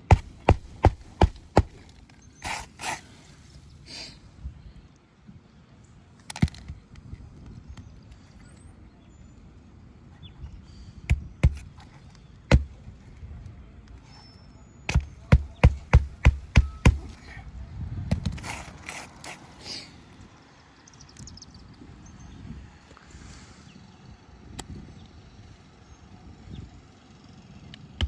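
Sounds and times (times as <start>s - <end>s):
hand tool knocking on roof shingles: 0.0s - 3.0s, 11.1s - 11.7s, 12.5s - 12.8s, 14.9s - 17.2s
scraping on roof shingles: 0.0s - 3.2s, 14.9s - 17.3s, 18.3s - 19.7s.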